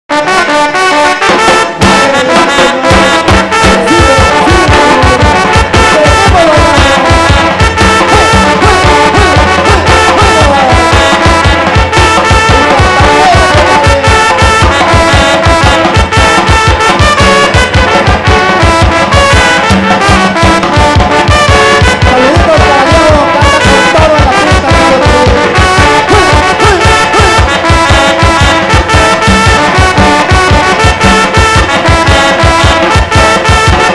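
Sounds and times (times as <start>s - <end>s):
trumpets and trombones: 0.1s - 33.9s
bass drum beat: 1.3s - 33.9s.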